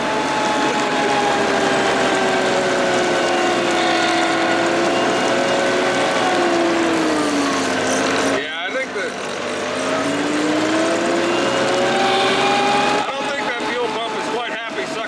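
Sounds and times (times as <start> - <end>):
diesel engine running: 0.0 - 15.0
vacuum blower whine: 0.0 - 15.0.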